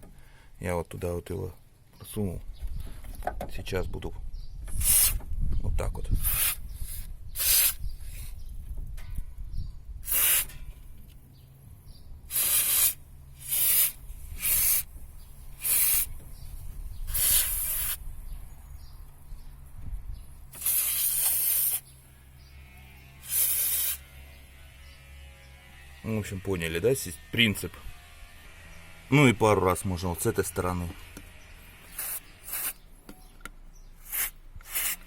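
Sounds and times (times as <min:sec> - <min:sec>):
aerosol spray hissing squirts: 0:04.8 - 0:05.2, 0:06.2 - 0:08.3, 0:10.0 - 0:10.5, 0:12.3 - 0:14.9, 0:15.6 - 0:16.2, 0:17.1 - 0:18.0, 0:20.5 - 0:21.9, 0:23.2 - 0:24.0, 0:31.9 - 0:32.8, 0:34.0 - 0:35.0.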